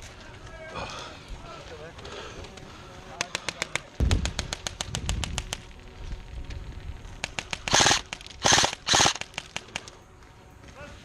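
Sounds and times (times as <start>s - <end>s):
airsoft guns firing: 3.2s - 5.7s, 7.1s - 10.0s.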